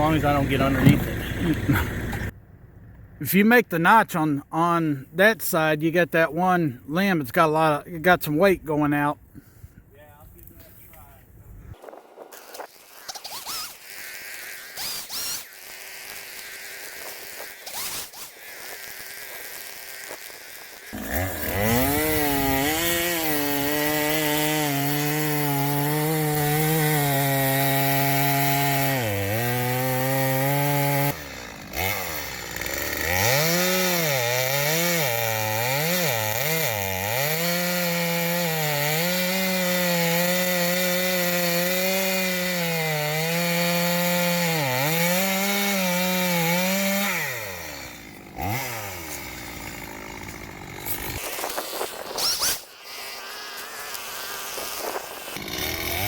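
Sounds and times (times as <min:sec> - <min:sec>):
chainsaw cutting wood: 0:00.0 - 0:03.0, 0:11.7 - 0:56.0.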